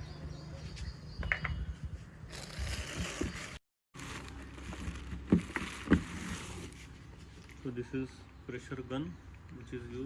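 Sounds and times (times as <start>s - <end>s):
packaging scraping and rustling: 2.3s - 7.0s.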